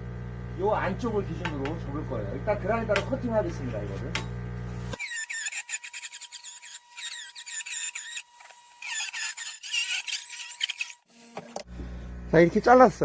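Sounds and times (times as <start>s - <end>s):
angle grinder cutting metal: 1.4s - 11.7s
screech of disc in metal: 4.8s - 11.5s.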